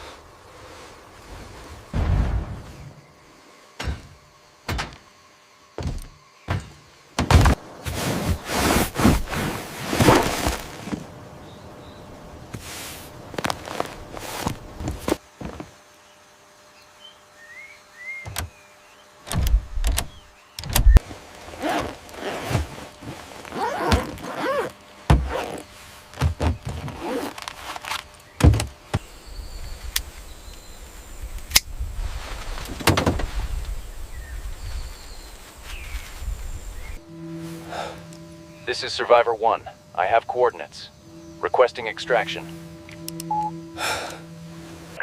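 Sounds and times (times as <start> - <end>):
irregular thuds and knocks: 3.8 - 5.0, 5.8 - 11.1, 25.1 - 25.3, 26.2 - 27.0.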